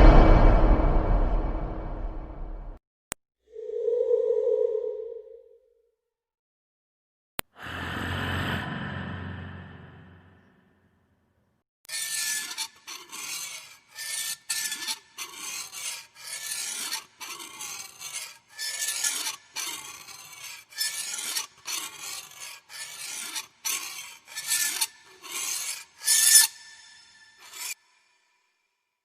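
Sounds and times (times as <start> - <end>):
harsh rasping scrape: 0.0 - 2.6, 11.9 - 28.3.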